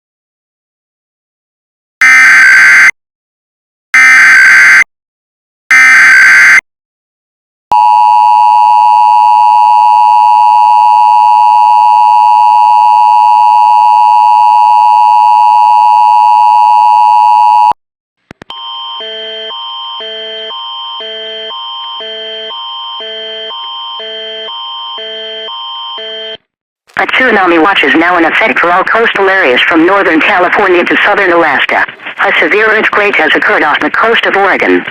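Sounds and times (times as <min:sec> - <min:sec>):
two-tone attention signal: 0:18.5 - 0:26.4.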